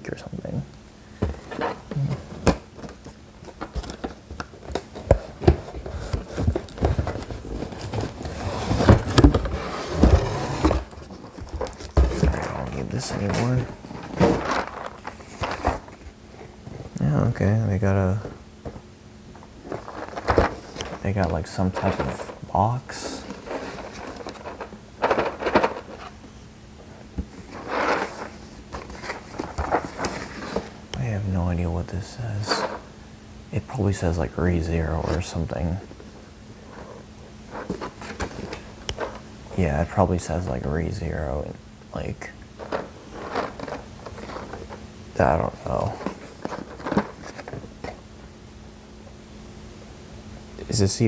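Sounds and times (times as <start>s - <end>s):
packaging rustling: 1.2s - 16.2s, 19.6s - 26.2s, 27.2s - 30.8s, 42.6s - 48.0s.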